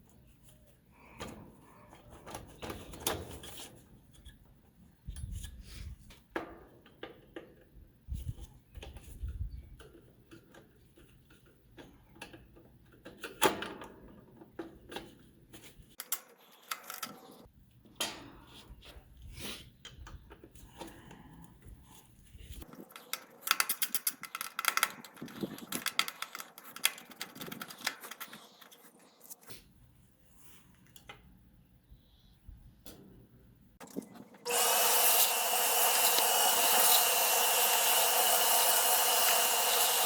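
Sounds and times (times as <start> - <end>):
hard objects clicking and knocking: 22.6 - 28.6.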